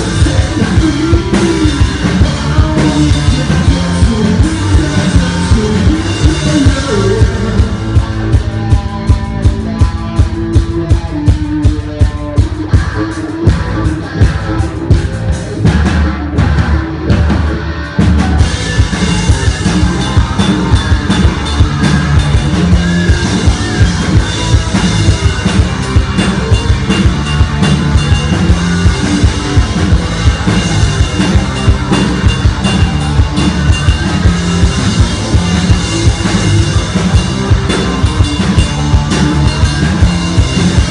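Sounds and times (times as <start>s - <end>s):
fast driving drums: 0.0s - 40.9s
rock band playing live: 0.0s - 40.9s.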